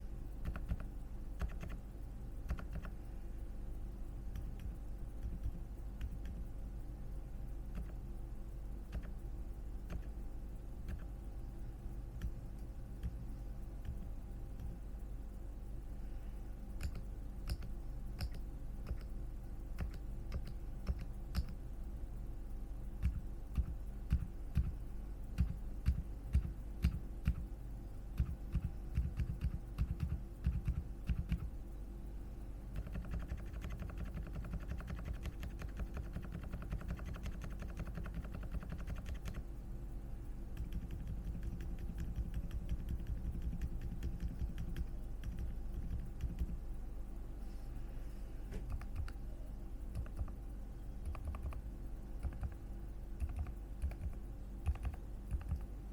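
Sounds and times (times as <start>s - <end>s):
typing on a keyboard: 0.4s - 1.8s, 2.5s - 3.0s, 7.7s - 8.0s, 8.9s - 9.2s, 16.8s - 19.1s, 19.8s - 21.6s, 23.0s - 24.8s, 25.4s - 27.4s, 28.2s - 31.5s, 32.8s - 39.4s, 40.6s - 46.6s, 48.6s - 49.2s, 49.9s - 50.4s, 51.0s - 51.6s, 52.2s - 52.6s, 53.2s - 55.7s.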